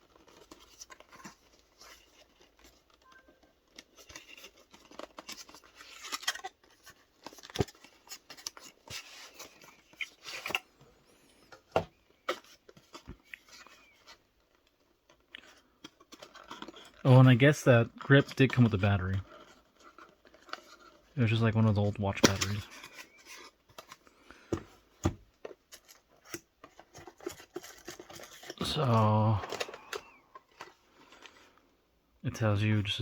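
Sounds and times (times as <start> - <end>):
packaging rustling and scraping: 0.0 - 31.8.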